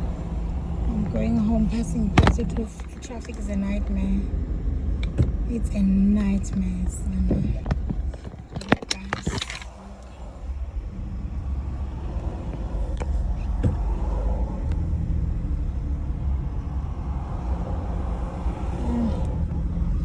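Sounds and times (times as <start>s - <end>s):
car engine and road noise: 0.0s - 20.0s
clicks: 6.3s - 10.7s.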